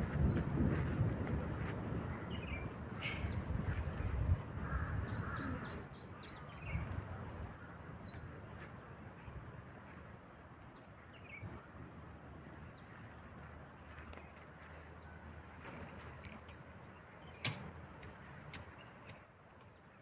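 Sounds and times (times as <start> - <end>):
wind rumbling on microphone: 0.0 - 14.2
high chattering bird notes: 4.6 - 6.8.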